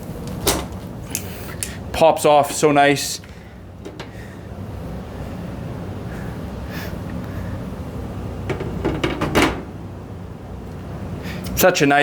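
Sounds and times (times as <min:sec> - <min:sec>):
steady low hum: 0:00.0 - 0:12.0
glass panel knocks and clicks: 0:08.5 - 0:09.7.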